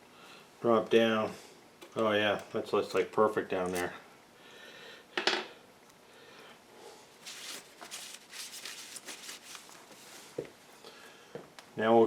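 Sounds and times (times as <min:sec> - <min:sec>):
faint rustling: 0:07.1 - 0:10.8.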